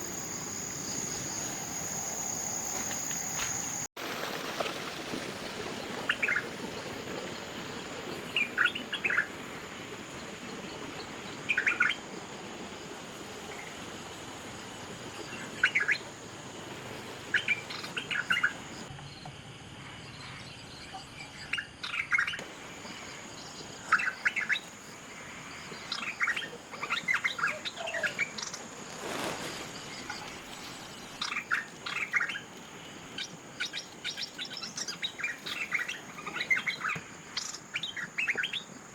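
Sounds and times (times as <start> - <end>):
high-pitched insect whine: 0.0 - 3.9.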